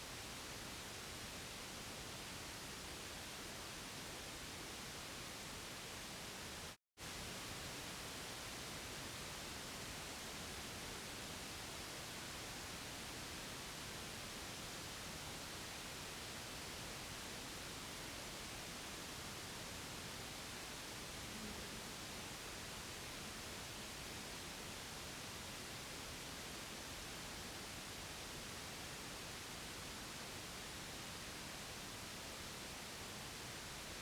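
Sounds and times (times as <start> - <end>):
white noise hiss: 0.0 - 34.0.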